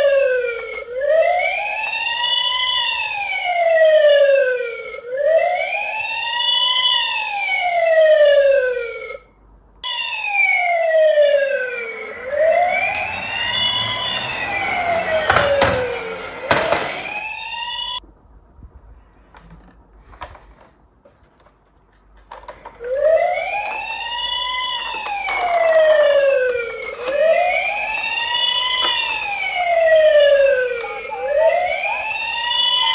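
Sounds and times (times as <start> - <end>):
wailing siren: 0.0 - 9.2, 9.8 - 18.0, 22.6 - 32.9
rumbling clatter with knocks: 12.8 - 17.2.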